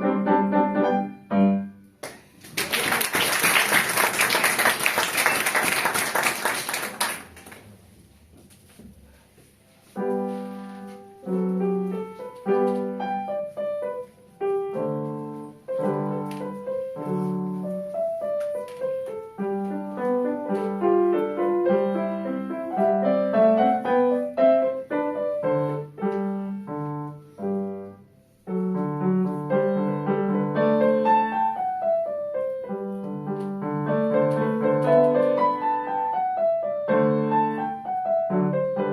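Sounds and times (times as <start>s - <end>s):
solo piano: 0.0s - 2.0s, 10.0s - 38.9s
applause: 2.0s - 7.8s.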